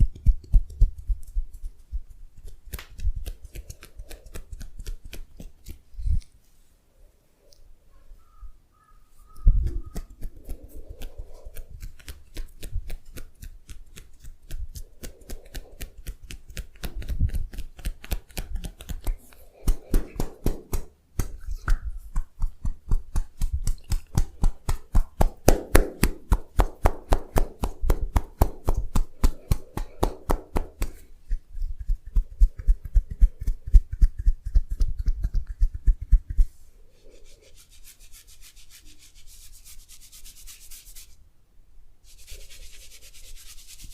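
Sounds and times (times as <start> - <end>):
rhythmic tapping massage strokes: 0.0 - 6.3, 9.3 - 41.1
skin rubbing: 0.0 - 6.7, 9.1 - 41.2, 42.1 - 43.9.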